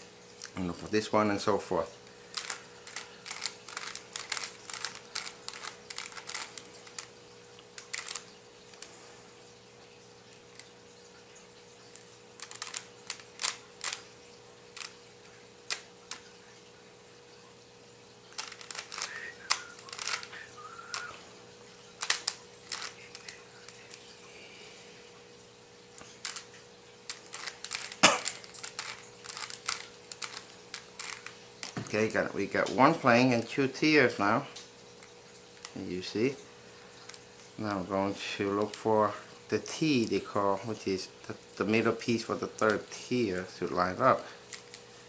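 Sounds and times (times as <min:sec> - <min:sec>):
puzzle cube clicking: 0:02.3 - 0:07.1, 0:07.8 - 0:08.9, 0:11.9 - 0:14.1, 0:18.3 - 0:21.2, 0:22.0 - 0:24.0, 0:26.0 - 0:32.0.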